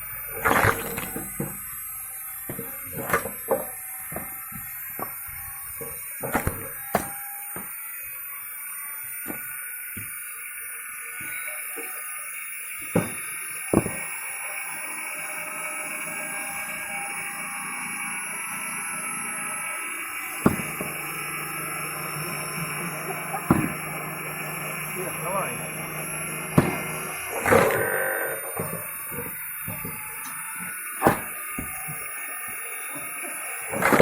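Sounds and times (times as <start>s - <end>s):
wooden log knocks: 12.9s - 14.1s, 20.4s - 21.0s, 23.5s - 23.8s, 26.6s - 32.0s.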